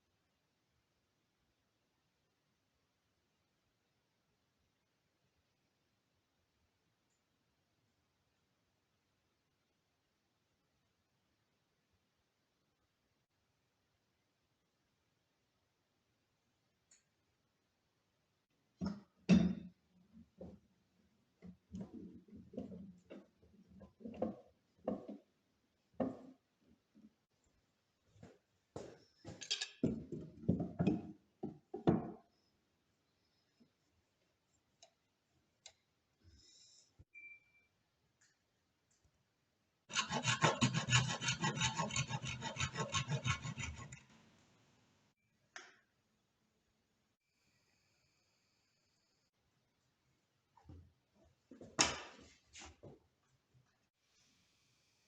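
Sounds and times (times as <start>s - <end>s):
hand tool scraping wood: 39.9s - 44.2s.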